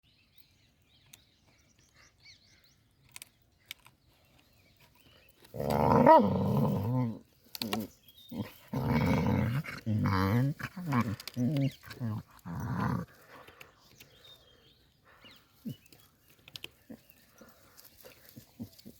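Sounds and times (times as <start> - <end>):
puppy growling: 5.5 - 13.4.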